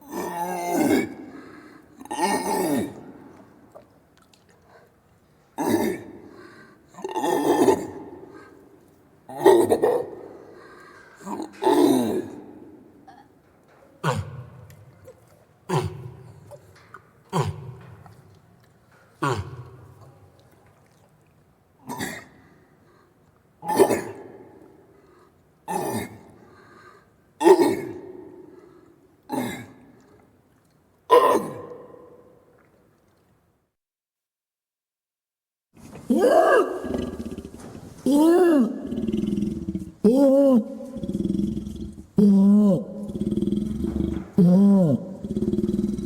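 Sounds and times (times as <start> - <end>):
orangutan grunting calls: 36.1 - 46.0.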